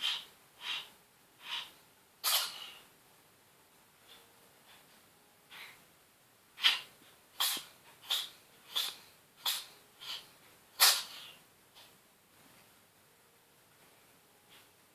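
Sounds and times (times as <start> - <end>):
cat sneezing: 0.0 - 2.8, 6.6 - 11.4
faint cat breath: 0.0 - 2.9.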